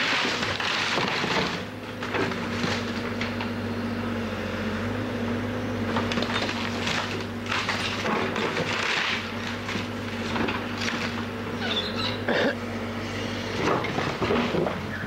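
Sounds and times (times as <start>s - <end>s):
wood cracking and splintering: 0.0s - 3.4s, 6.0s - 11.3s, 13.6s - 14.8s
machine engine running: 0.0s - 15.0s.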